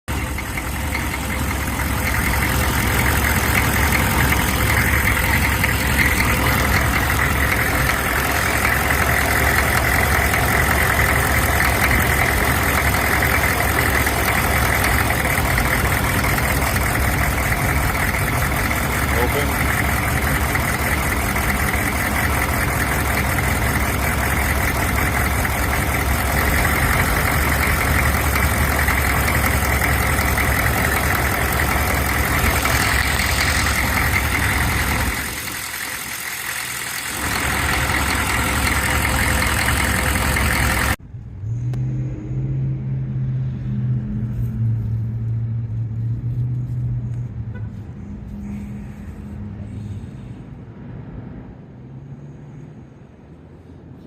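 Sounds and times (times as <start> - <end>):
engine knocking: 0.0 - 41.0
low engine hum: 0.0 - 54.0.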